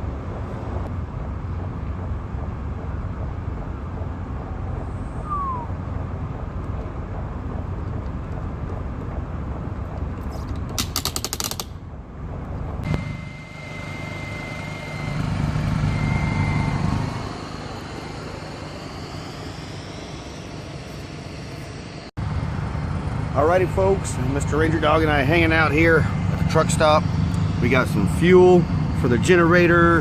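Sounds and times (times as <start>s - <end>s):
vehicle engine rumbling: 0.0s - 30.0s
sharp clicks: 9.9s - 11.8s
steady high tone: 12.8s - 30.0s.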